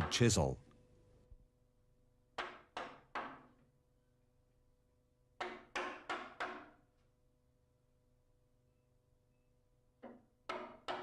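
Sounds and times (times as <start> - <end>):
chisel being struck: 2.4 - 3.5, 5.4 - 6.8.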